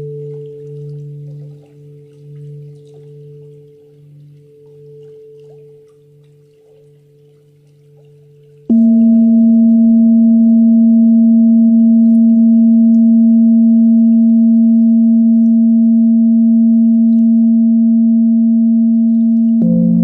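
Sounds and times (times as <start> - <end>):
meditation bell ringing: 8.7 - 20.0.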